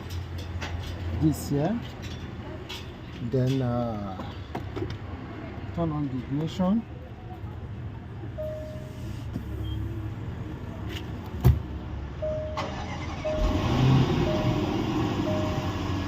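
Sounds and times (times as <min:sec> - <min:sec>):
car warning chime beeps: 0:08.3 - 0:10.0, 0:12.2 - 0:16.0.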